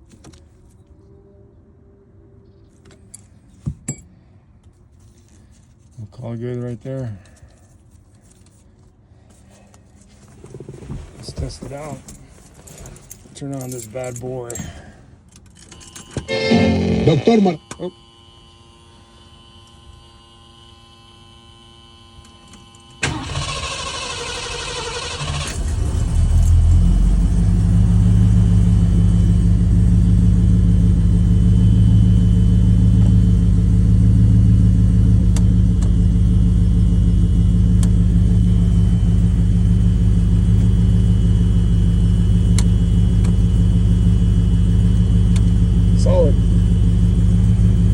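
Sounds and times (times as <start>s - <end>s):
car starter cranking: 23.0s - 26.9s
car engine idling: 23.0s - 47.9s.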